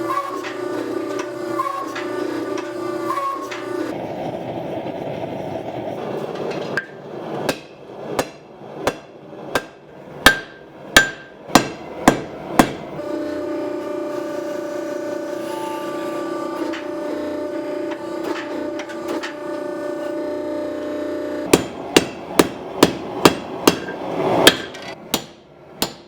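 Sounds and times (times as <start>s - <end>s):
hammer striking hot steel on anvil: 6.4s - 13.0s, 21.4s - 26.0s.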